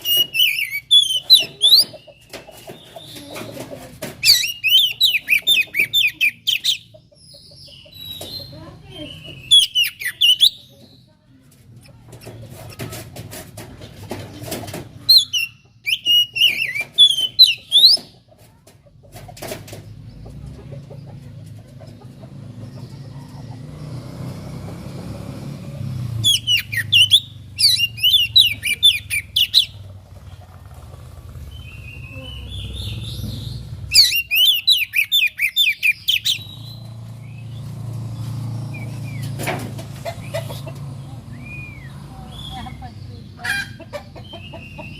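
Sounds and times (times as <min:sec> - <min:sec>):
songbird chirping and whistling: 0:00.0 - 0:03.4, 0:04.2 - 0:10.9, 0:15.1 - 0:18.3, 0:26.2 - 0:29.9, 0:31.5 - 0:37.7, 0:38.7 - 0:39.4, 0:40.1 - 0:44.9.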